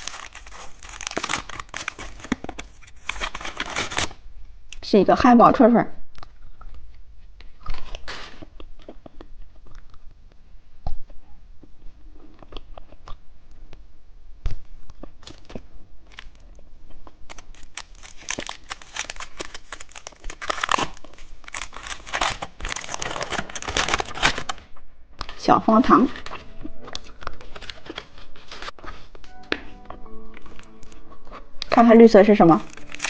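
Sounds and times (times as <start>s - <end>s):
plastic packaging clicks and rustles: 0.0s - 4.2s, 14.5s - 25.4s, 26.1s - 29.4s, 32.6s - 33.0s
plastic packaging tearing and crinkling: 0.0s - 4.2s, 6.2s - 10.0s, 14.5s - 25.4s, 26.0s - 29.4s, 30.5s - 33.0s.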